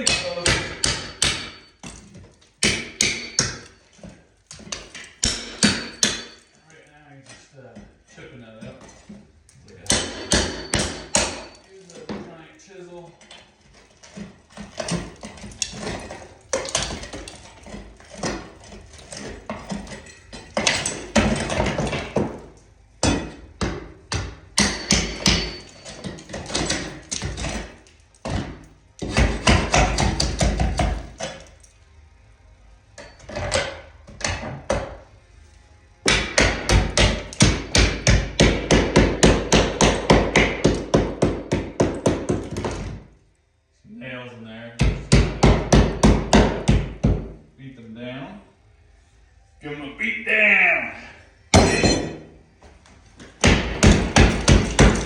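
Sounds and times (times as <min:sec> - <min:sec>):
hammer striking chisel: 0:00.0 - 0:06.6, 0:09.8 - 0:12.2, 0:14.1 - 0:31.5, 0:36.0 - 0:42.9, 0:44.8 - 0:47.3, 0:51.5 - 0:52.3, 0:53.4 - 0:55.0.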